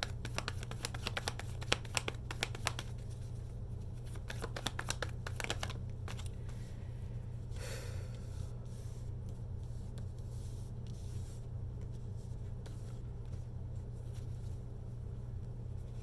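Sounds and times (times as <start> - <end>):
cards being shuffled: 0.0 - 6.6
low room hum: 0.0 - 16.0.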